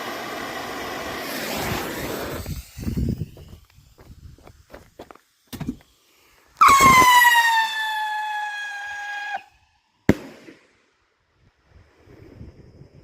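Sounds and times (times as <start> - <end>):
rocket whistle sliding down: 6.6 - 9.6
sharp bang of firework: 10.1 - 10.6.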